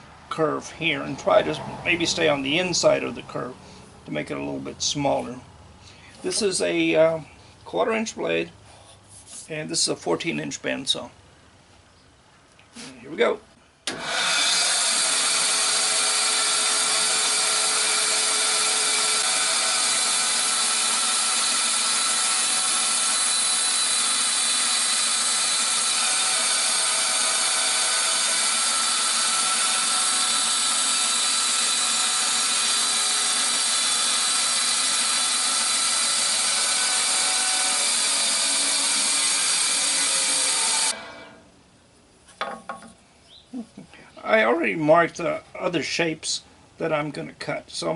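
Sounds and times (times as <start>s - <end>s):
bandsaw cutting wood: 13.9s - 41.4s.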